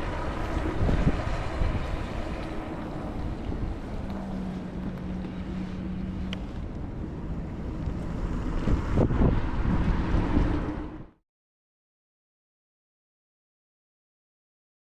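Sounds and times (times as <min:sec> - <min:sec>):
wind buffeting microphone: 0:00.0 - 0:11.2.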